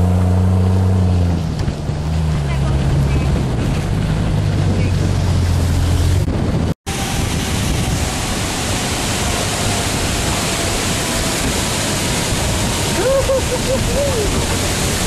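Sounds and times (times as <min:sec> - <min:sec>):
floodwater rushing: 0:06.9 - 0:15.0.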